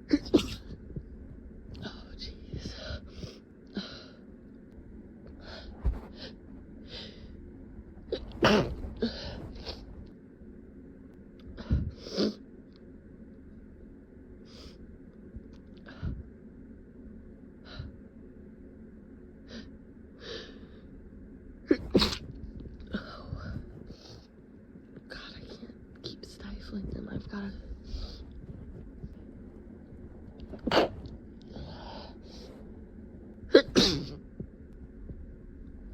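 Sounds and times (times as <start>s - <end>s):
person stifling sneezes: 0.1s - 0.7s, 8.3s - 9.2s, 21.7s - 22.2s, 30.6s - 31.0s, 33.5s - 34.2s.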